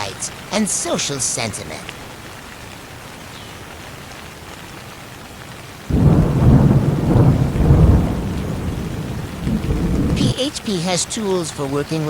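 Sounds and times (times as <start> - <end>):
rain hiss: 0.0 - 12.0
rolling thunder: 5.9 - 10.4.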